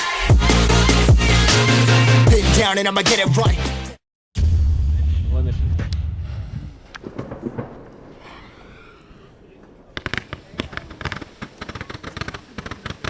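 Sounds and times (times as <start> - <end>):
fireworks popping: 6.7 - 13.0.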